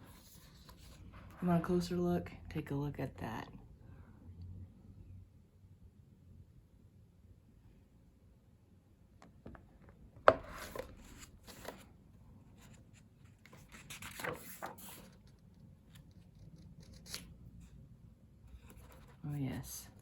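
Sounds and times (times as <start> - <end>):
book pages turning: 0.1 - 1.3, 10.3 - 17.8, 18.5 - 19.2.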